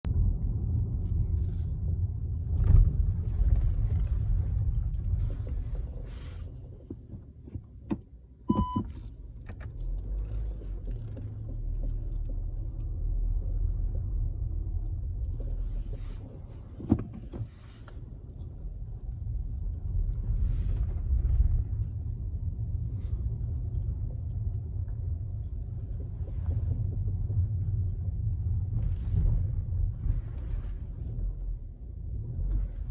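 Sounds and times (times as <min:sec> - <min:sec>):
car engine low rumble: 0:00.0 - 0:32.9
short beep: 0:08.5 - 0:08.9.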